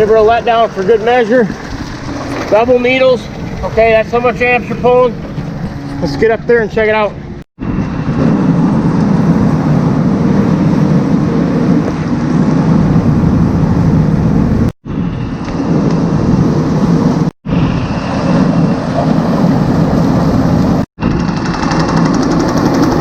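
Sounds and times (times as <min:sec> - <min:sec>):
farm machinery rumbling: 0:00.0 - 0:17.2.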